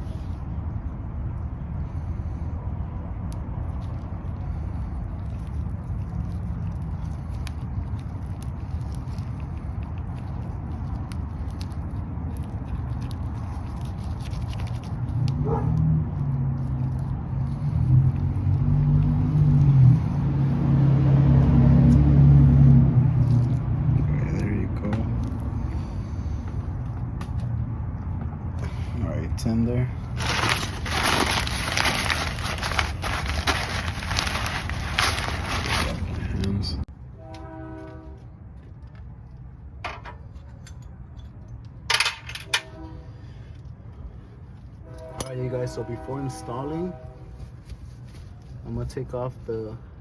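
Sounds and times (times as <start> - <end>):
metal parts clattering: 41.9 - 42.6.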